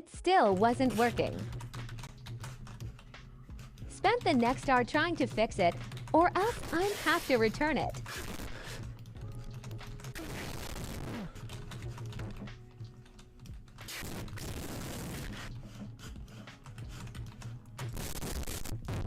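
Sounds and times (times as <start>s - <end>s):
laptop keyboard typing: 0.8s - 18.7s.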